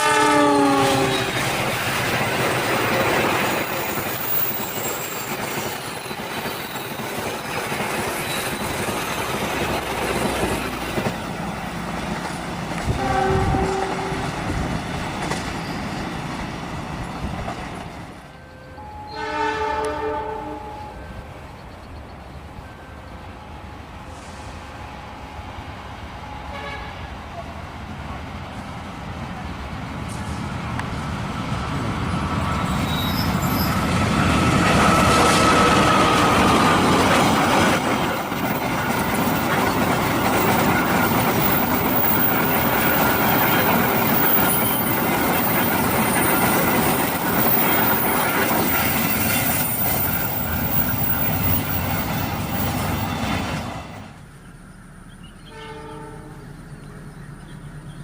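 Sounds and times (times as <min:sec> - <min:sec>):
train horn: 0:00.0 - 0:01.6, 0:12.8 - 0:14.5, 0:18.3 - 0:21.4, 0:26.2 - 0:27.5, 0:55.4 - 0:56.6
locomotive engine: 0:00.0 - 0:19.2, 0:19.8 - 0:58.0
train wheels on rails: 0:00.0 - 0:58.0.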